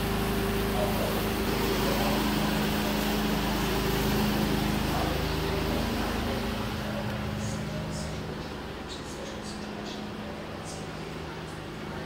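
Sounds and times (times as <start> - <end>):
broad rushing noise: 0.0 - 12.0
low mechanical hum: 0.0 - 12.0.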